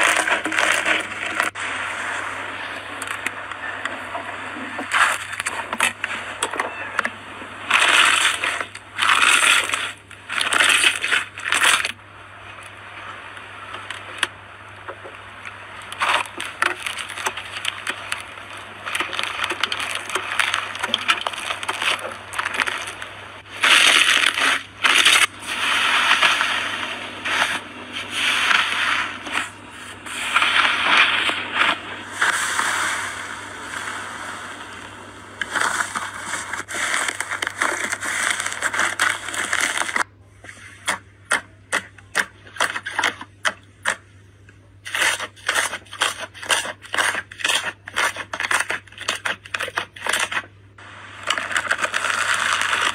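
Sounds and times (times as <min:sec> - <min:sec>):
slime squeezed crackling: 0:07.6 - 0:12.0, 0:15.5 - 0:40.1, 0:44.8 - 0:50.5, 0:51.1 - 0:52.9.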